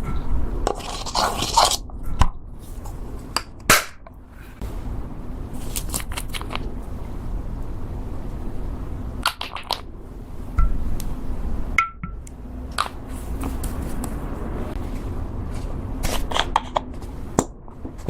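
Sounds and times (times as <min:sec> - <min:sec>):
low handling rumble: 0:04.2 - 0:16.1.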